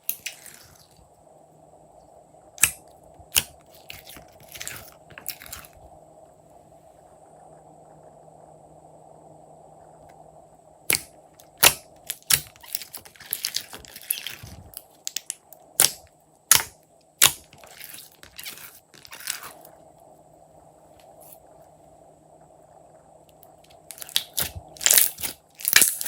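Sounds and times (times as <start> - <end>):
sharp crunches and snaps: 0.0 - 0.9, 2.6 - 5.8, 10.9 - 19.7, 23.4 - 26.0
crackling slime: 2.6 - 5.8, 10.9 - 19.7, 23.7 - 26.0.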